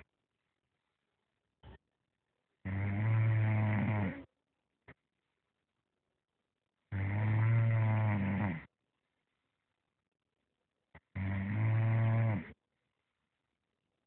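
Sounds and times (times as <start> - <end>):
person snoring: 2.6 - 4.3, 6.9 - 8.7, 11.0 - 12.6.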